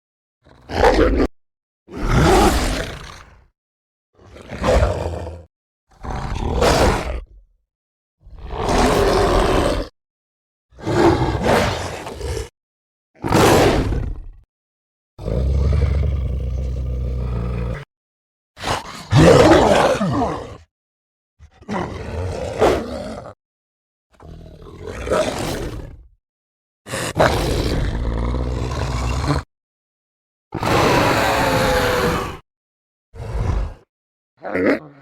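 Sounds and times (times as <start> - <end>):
creature roars: 0.5 - 1.3, 1.9 - 3.4, 4.2 - 7.3, 8.2 - 9.9, 10.8 - 12.5, 13.2 - 14.5, 15.2 - 17.9, 18.6 - 20.7, 21.4 - 23.4, 24.2 - 26.1, 26.9 - 29.5, 30.5 - 32.4, 33.1 - 35.0.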